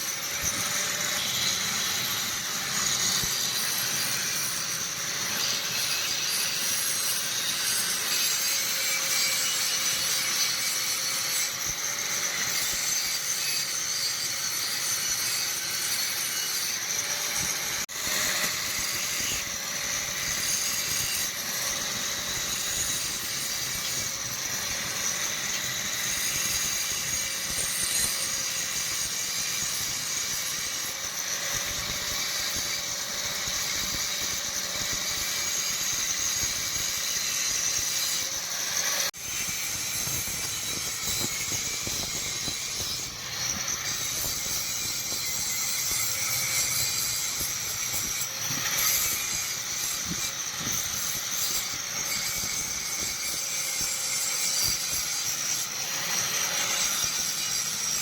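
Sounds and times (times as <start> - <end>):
workshop machine running: 16.7 - 51.0.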